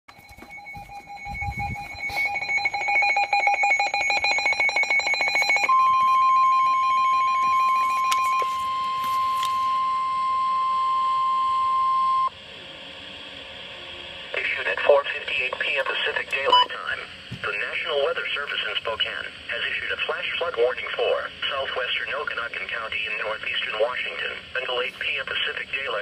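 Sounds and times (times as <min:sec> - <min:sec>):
pulsing two-pitch electronic beeping: 0:00.1 - 0:12.3
faint radio hiss: 0:12.5 - 0:26.0.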